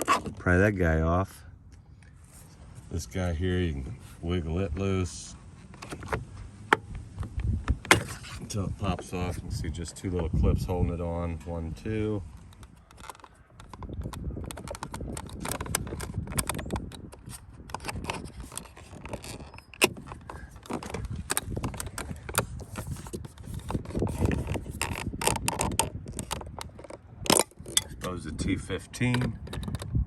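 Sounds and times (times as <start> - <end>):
plastic trim clicks and rattles: 12.4 - 28.2, 28.9 - 30.0.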